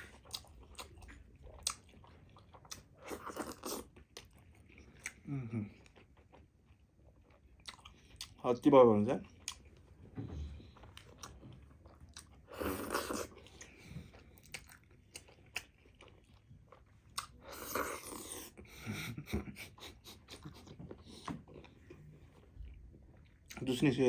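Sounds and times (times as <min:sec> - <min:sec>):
chewing and biting food: 0:00.0 - 0:08.4, 0:09.2 - 0:09.8, 0:10.6 - 0:18.6.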